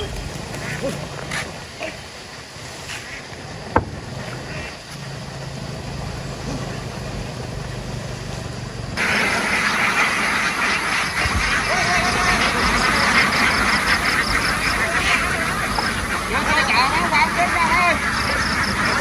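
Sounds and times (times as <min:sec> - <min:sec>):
flock of ducks quacking: 0:09.0 - 0:19.0.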